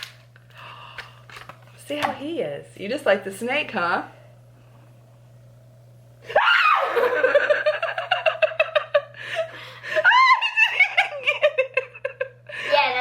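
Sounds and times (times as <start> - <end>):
person shrieking: 6.3 - 7.0
rapid pulsing laughter: 6.8 - 12.4.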